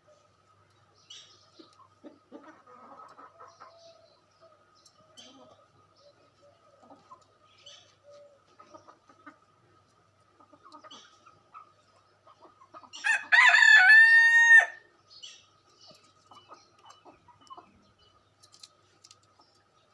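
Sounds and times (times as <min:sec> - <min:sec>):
rooster crowing: 0:13.0 - 0:14.8.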